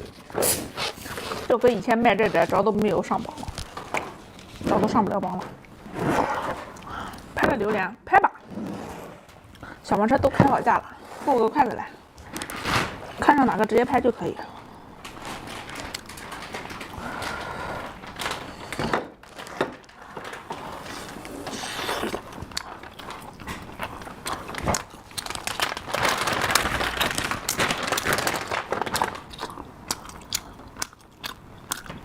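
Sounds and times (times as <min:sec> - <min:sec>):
objects clicking and crinkling: 0:15.0 - 0:21.3, 0:22.1 - 0:32.0.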